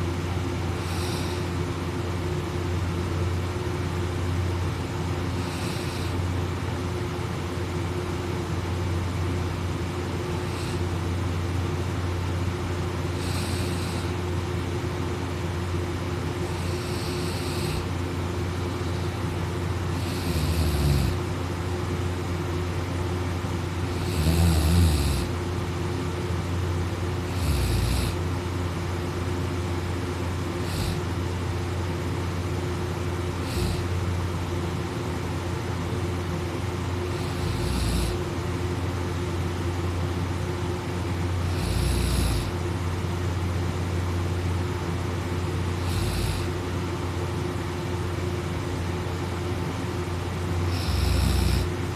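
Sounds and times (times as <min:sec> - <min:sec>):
steady low hum: 0:00.0 - 0:51.9
person snoring: 0:00.7 - 0:01.6, 0:05.3 - 0:06.3, 0:10.3 - 0:10.9, 0:13.1 - 0:14.2, 0:16.5 - 0:18.0, 0:20.0 - 0:21.2, 0:23.9 - 0:25.4, 0:27.3 - 0:28.2, 0:30.6 - 0:31.2, 0:33.4 - 0:34.0, 0:37.1 - 0:38.2, 0:41.4 - 0:42.6, 0:45.8 - 0:46.6, 0:50.7 - 0:51.8.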